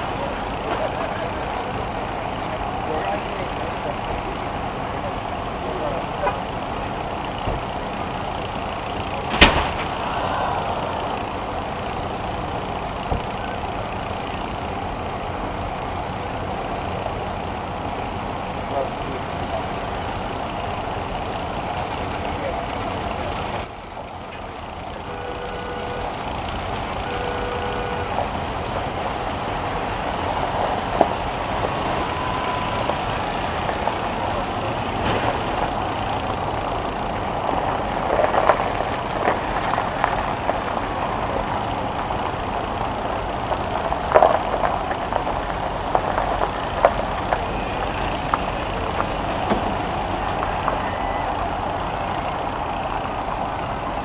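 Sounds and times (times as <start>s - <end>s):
buses colliding knocks: 0.0s - 54.0s
heavy engines running: 0.0s - 54.0s.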